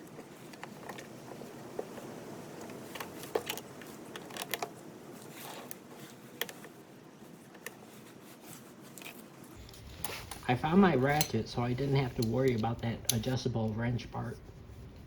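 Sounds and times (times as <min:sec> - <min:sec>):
metal parts clicking and knocking: 0:00.0 - 0:05.8, 0:09.0 - 0:13.4.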